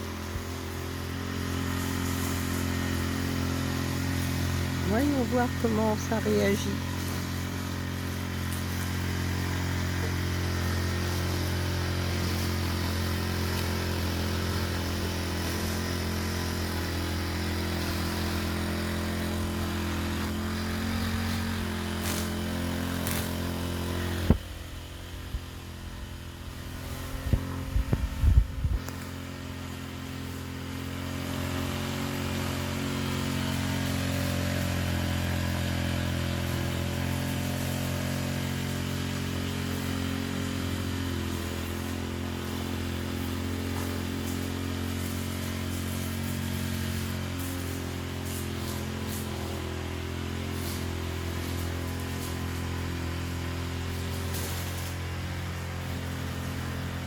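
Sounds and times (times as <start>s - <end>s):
brushcutter engine running: 0.0s - 57.0s.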